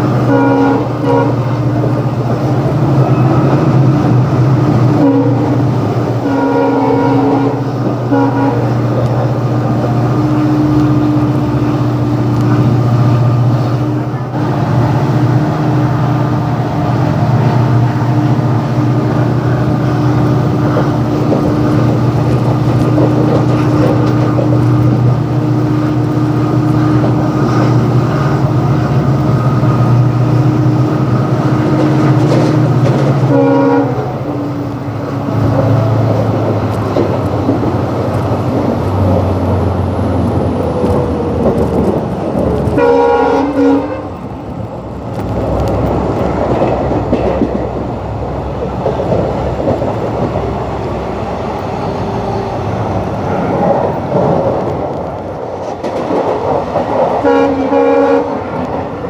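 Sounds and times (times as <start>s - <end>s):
diesel locomotive horn blasts: 0.0s - 1.8s, 4.8s - 16.6s, 30.5s - 36.1s, 42.7s - 44.3s, 57.2s - 58.7s
train rumbling: 0.0s - 59.0s.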